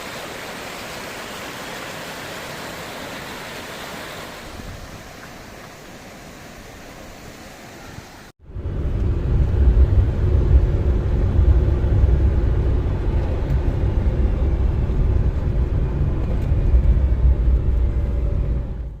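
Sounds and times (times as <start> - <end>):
waterfall rushing hiss: 0.0 - 8.3
deep rumble of falling water: 0.0 - 19.0.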